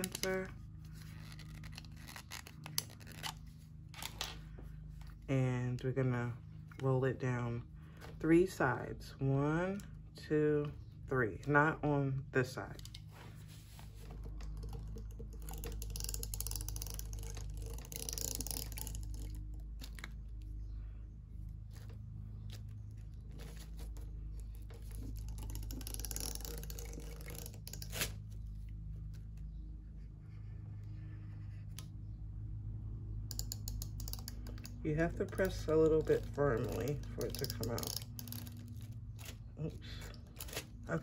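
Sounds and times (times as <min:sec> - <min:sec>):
tape runner rolling on wrapper: 0:00.0 - 0:04.4, 0:22.5 - 0:28.3, 0:34.0 - 0:41.0.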